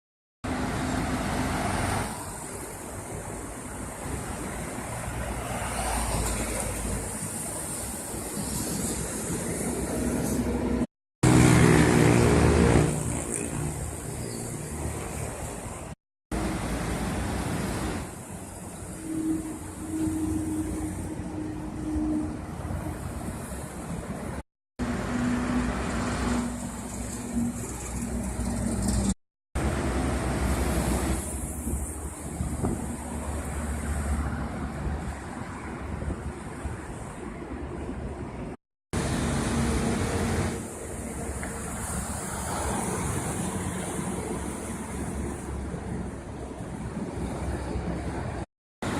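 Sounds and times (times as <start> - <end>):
highway road noise: 0.4 - 48.9
truck passing with engine drone: 9.6 - 15.0.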